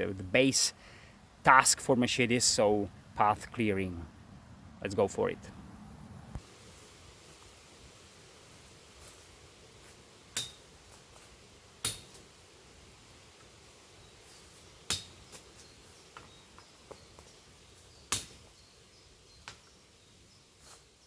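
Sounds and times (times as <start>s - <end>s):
machete chopping branches: 10.4s - 10.6s, 11.8s - 12.2s, 14.9s - 15.4s, 18.1s - 18.5s.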